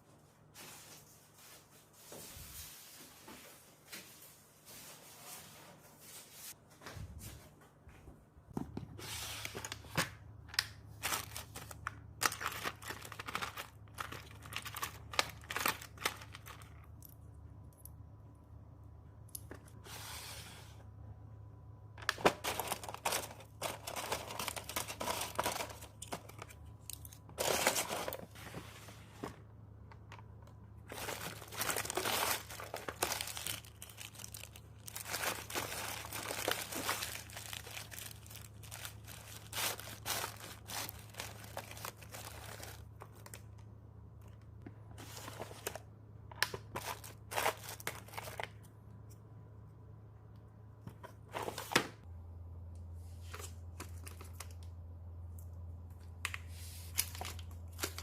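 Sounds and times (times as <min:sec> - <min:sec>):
low steady hum: 0:00.0 - 0:58.0
craft material crinkling and tearing: 0:10.9 - 0:16.8, 0:30.8 - 0:43.4.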